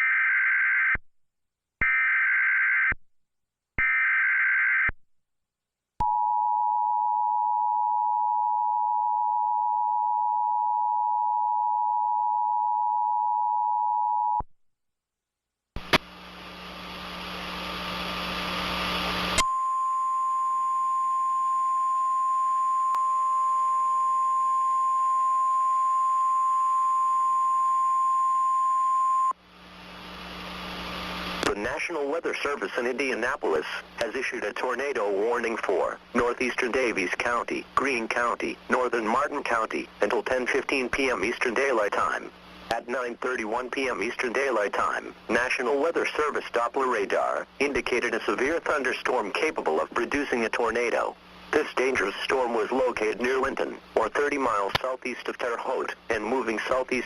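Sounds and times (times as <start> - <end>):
loud static hiss with low hum: 15.8 - 19.5, 28.4 - 57.0.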